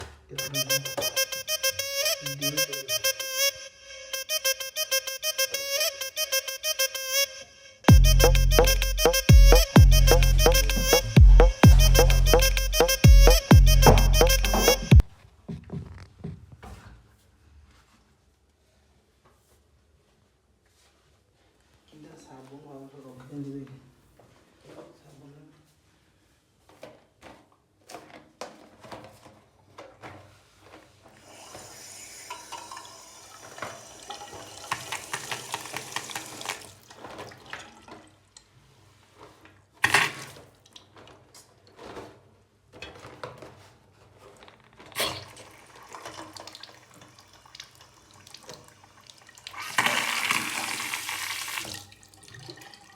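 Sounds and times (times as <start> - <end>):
water tap running: 31.2 - 37.8, 45.0 - 52.9.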